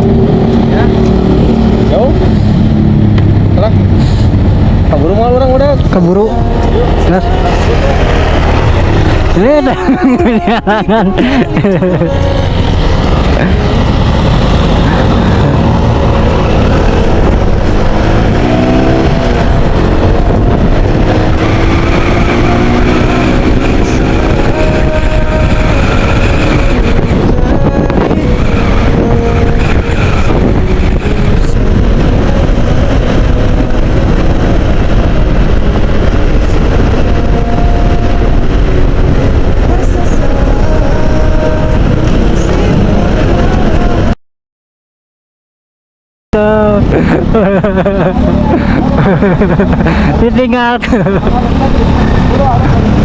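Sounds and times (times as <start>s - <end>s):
road vehicles driving fast: 0.0s - 44.2s, 46.4s - 53.0s.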